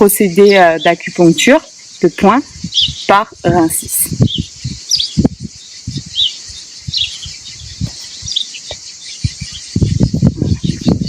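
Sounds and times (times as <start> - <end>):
small bird chirping: 0.0 - 11.0
low thumps and rumbling: 4.1 - 6.2.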